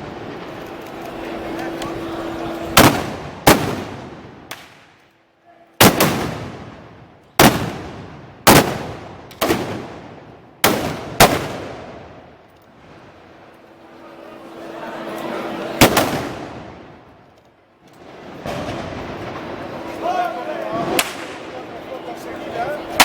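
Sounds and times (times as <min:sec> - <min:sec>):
echoing gunshots: 0:00.0 - 0:05.0, 0:05.8 - 0:12.3, 0:15.5 - 0:17.0, 0:18.2 - 0:21.8.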